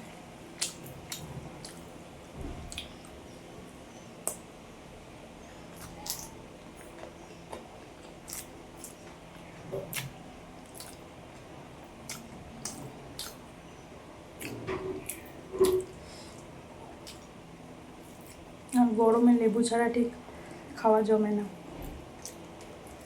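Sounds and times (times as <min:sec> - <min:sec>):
wet chewing: 0:00.6 - 0:01.9, 0:05.7 - 0:13.4.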